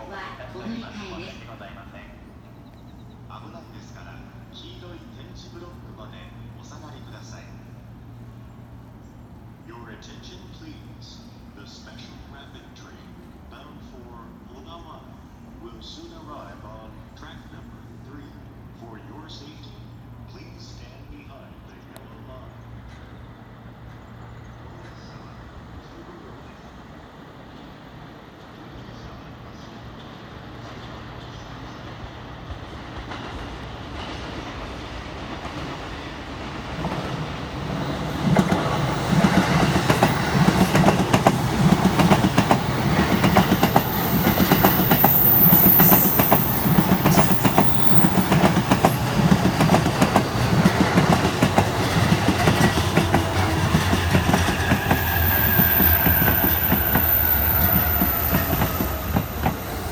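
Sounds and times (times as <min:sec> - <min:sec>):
electric train approaching: 0:00.0 - 0:59.9
falling whine of slowing train: 0:00.0 - 0:59.9
train wheels clicking over rail joints: 0:32.5 - 0:59.9.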